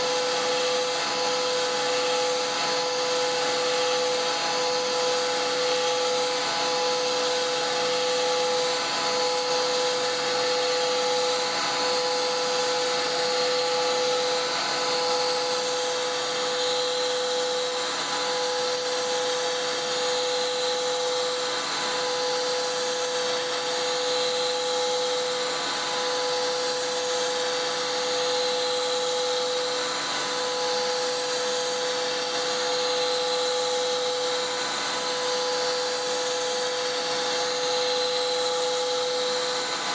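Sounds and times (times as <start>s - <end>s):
router spindle whining: 0.0s - 39.9s.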